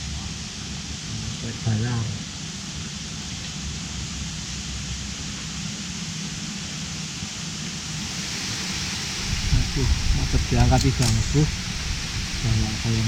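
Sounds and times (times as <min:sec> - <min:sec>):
river water rushing: 0:07.8 - 0:13.0.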